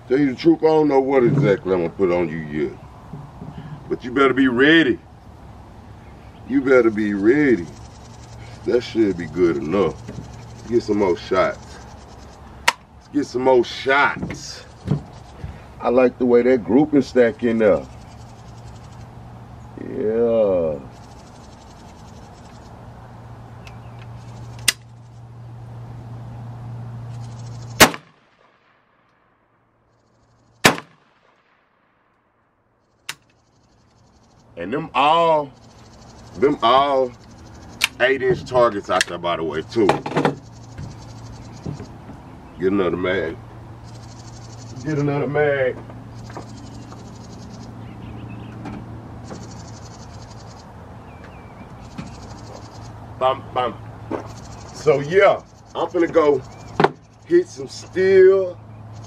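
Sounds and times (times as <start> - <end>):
steady low hum: 0.0 - 29.0, 32.8 - 59.0
insect pulsing trill: 3.9 - 27.8, 29.8 - 30.7, 32.8 - 59.0
rifle shots: 27.8 - 28.8, 30.6 - 31.7.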